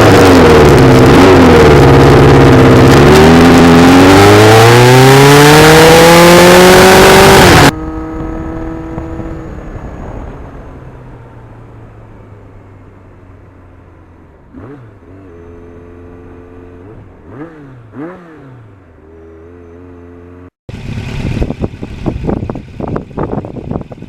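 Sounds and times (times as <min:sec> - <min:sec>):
loud rough rushing noise: 0:00.0 - 0:11.4, 0:20.7 - 0:24.0
motorcycle engine idling: 0:20.7 - 0:24.0.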